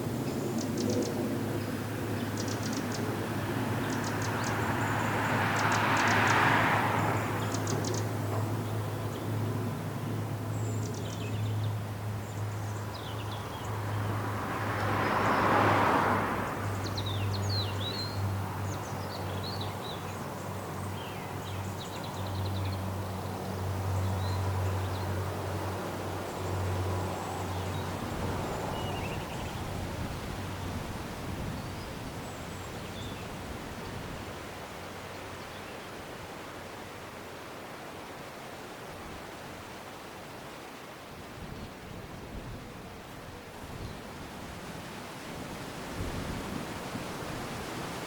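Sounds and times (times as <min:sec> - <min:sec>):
small birds chirping: 0:00.3 - 0:01.3, 0:02.2 - 0:06.4, 0:26.4 - 0:29.8.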